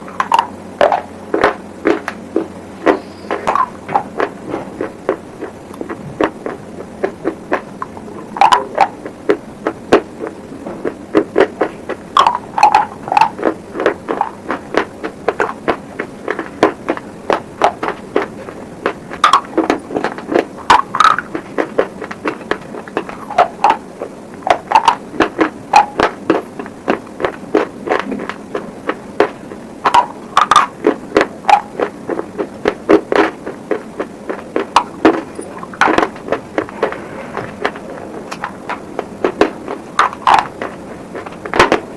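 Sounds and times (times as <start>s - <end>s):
crunching of chewed slate pencil: 0.2s - 41.9s.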